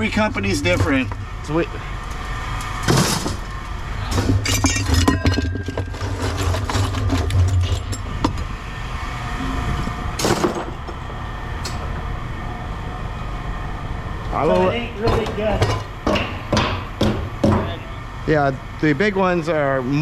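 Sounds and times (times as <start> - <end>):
steady low hum: 0.0 - 20.0
metal clatter: 4.1 - 8.4
scrap metal clinking and clanking: 4.1 - 8.4.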